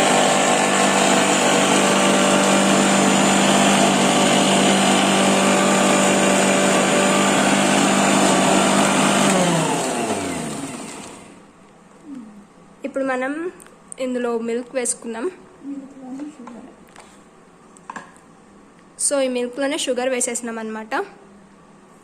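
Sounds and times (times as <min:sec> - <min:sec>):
mixer grinder motor spinning: 0:00.0 - 0:11.4.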